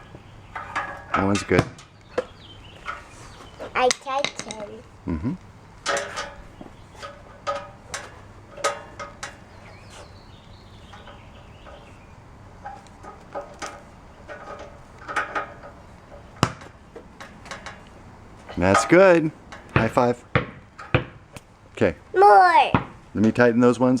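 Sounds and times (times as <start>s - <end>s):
metal clinks from grill assembly: 5.8s - 9.4s.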